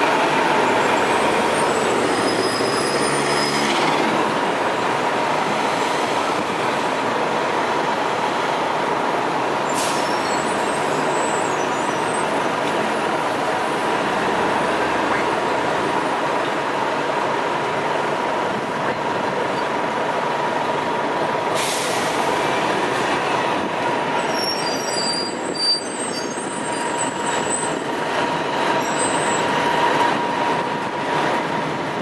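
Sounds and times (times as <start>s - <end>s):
buses passing: 0.0s - 32.0s
brake squeals: 0.9s - 4.2s, 9.7s - 12.4s, 24.2s - 29.6s.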